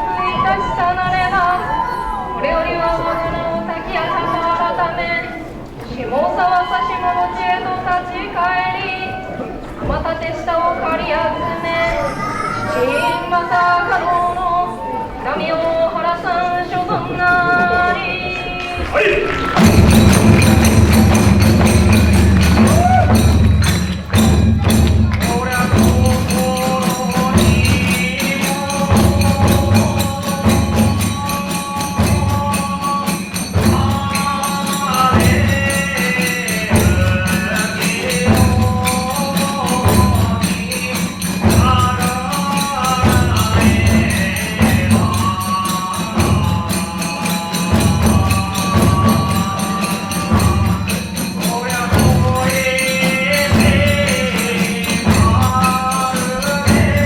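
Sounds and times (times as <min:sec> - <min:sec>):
drums beating: 0:17.7 - 0:57.0
hand cymbals clashing: 0:19.5 - 0:57.0.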